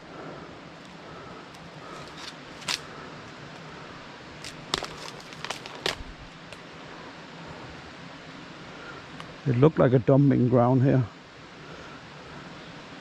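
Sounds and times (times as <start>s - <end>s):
sharp cracks and snaps: 0.8s - 3.7s, 4.4s - 6.7s
footsteps through leaf litter: 4.4s - 6.4s.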